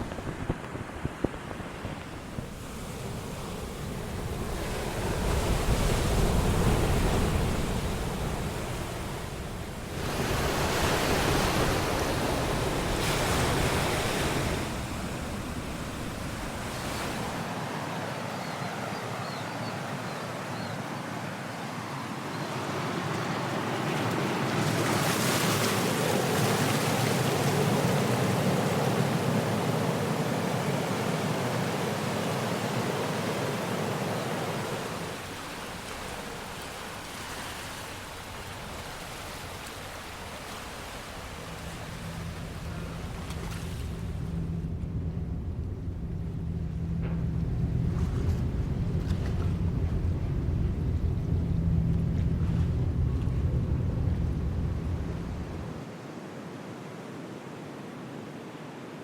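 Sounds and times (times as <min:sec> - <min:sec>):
ocean waves washing in: 0:00.0 - 0:59.0
deep rumble: 0:41.5 - 0:55.8.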